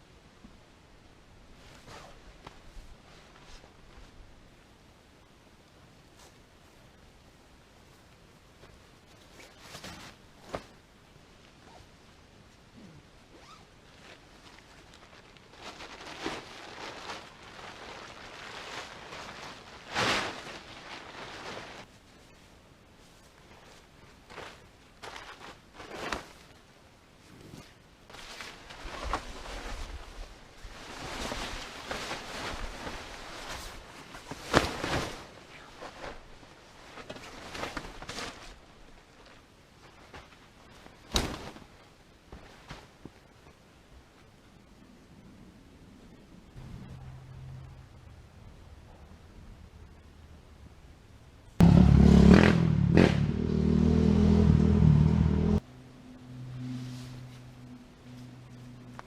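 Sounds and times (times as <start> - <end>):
camping gear rustling: 1.5 - 4.7, 6.0 - 7.0, 7.8 - 44.4.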